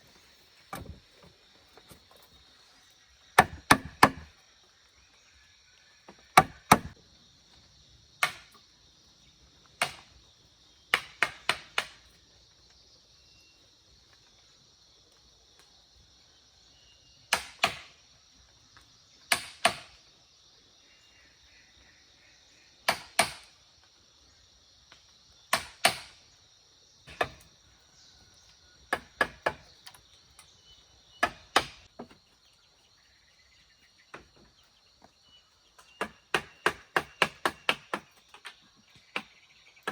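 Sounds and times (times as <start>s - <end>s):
hand tool striking hard material: 3.4s - 4.3s, 6.4s - 7.0s.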